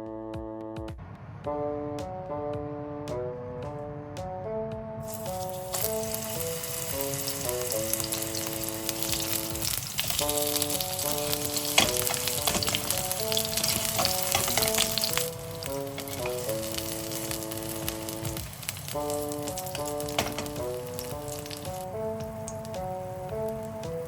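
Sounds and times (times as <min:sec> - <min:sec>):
background music: 0:00.0 - 0:24.0
onions sizzling in hot oil: 0:05.1 - 0:24.0.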